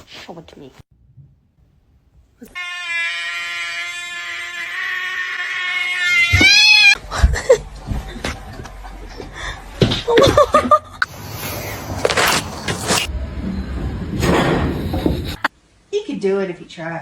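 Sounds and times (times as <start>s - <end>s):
cat yowling: 2.6s - 7.0s.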